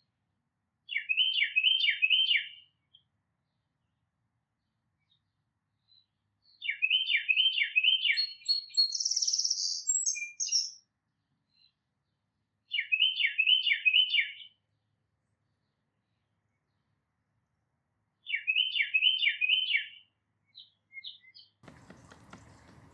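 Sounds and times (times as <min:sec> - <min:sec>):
titmouse whistled song: 0:06.8 - 0:10.8
buzzy bird call: 0:21.6 - 0:22.9.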